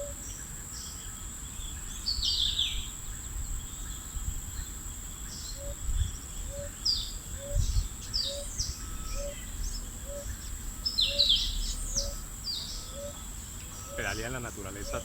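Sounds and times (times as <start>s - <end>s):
birds chirping: 0.0s - 15.0s
high-pitched insect drone: 3.1s - 15.0s.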